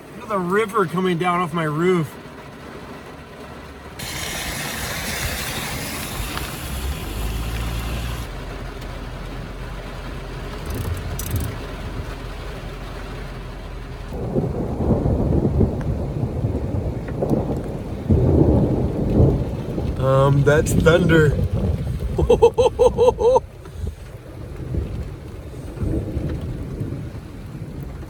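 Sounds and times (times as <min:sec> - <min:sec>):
heavy rain on a metal roof: 0:00.0 - 0:28.0
thunder rumbling: 0:04.0 - 0:28.0.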